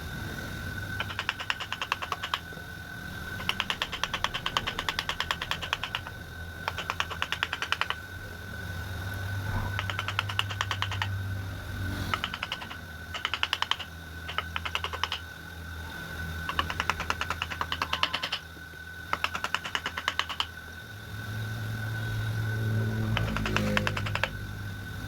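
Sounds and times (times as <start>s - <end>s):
steady high-pitched hum: 0.0s - 25.0s
rapid tapping clicks: 0.9s - 2.5s, 3.3s - 8.1s, 9.7s - 11.2s, 12.0s - 15.4s, 16.4s - 20.6s, 23.0s - 24.4s.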